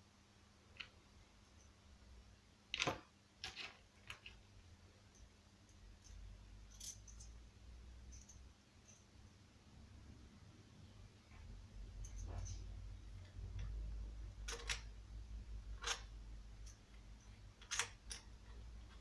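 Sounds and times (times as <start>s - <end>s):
metal parts clinking: 14.4s - 14.9s, 15.8s - 19.0s.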